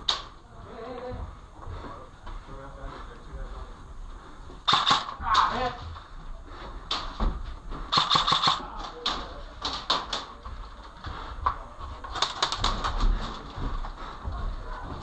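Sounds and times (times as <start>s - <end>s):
airsoft guns firing: 4.6s - 5.6s, 7.9s - 10.2s.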